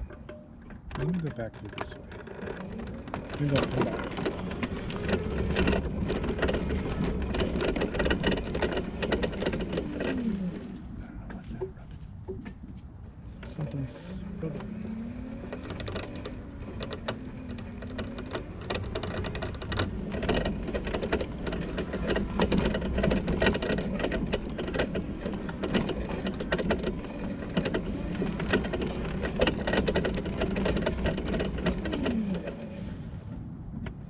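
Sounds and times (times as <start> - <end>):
rapid clicking and scraping: 0.0 - 12.4, 13.4 - 34.0
electric motor humming: 14.0 - 33.0.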